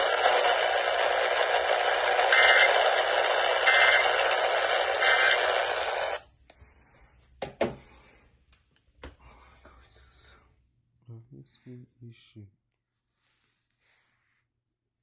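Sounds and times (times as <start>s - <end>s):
radio receiver hiss: 0.0s - 6.2s.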